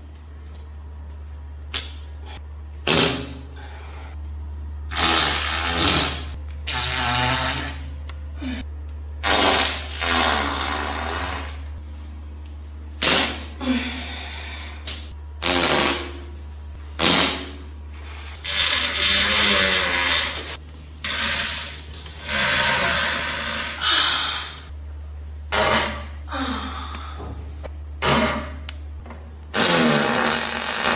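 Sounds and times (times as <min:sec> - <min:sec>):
steady low hum: 0:00.0 - 0:30.9
farts: 0:02.9 - 0:03.4, 0:04.9 - 0:07.9, 0:09.2 - 0:11.6, 0:13.0 - 0:13.6, 0:15.4 - 0:16.3, 0:17.0 - 0:17.6, 0:18.4 - 0:23.8, 0:25.5 - 0:26.2, 0:28.0 - 0:28.7, 0:29.5 - 0:30.9.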